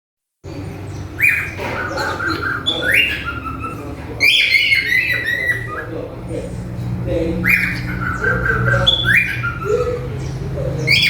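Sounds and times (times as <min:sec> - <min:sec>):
cockatiel whistling and chirping: 0:02.3 - 0:05.9.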